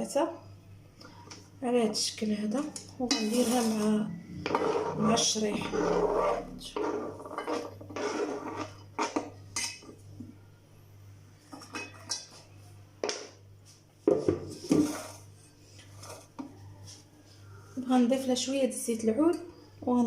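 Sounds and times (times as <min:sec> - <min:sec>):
low steady hum: 0:00.0 - 0:20.0
metal utensils clinking on dishes: 0:11.5 - 0:12.4.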